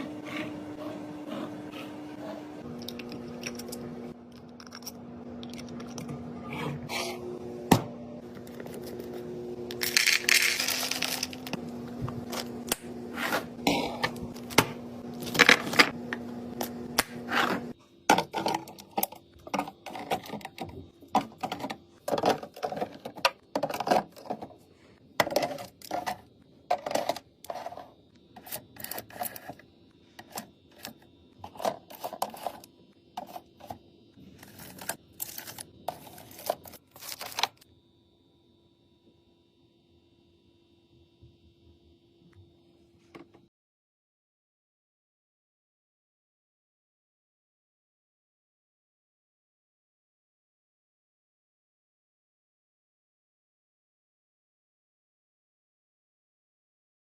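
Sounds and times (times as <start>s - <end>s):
small hard items clinking: 9.7s - 11.6s.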